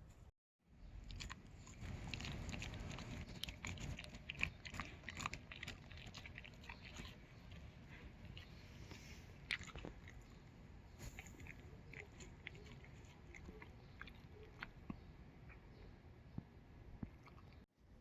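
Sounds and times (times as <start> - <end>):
dog chewing grass: 1.0 - 10.4, 11.0 - 15.0.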